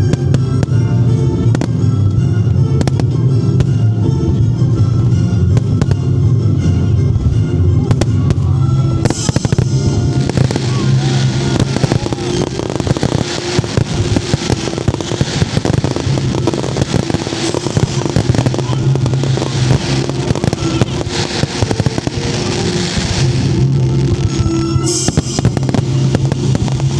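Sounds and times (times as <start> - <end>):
fireworks bursting and crackling: 0.0 - 26.9
music: 0.0 - 26.9.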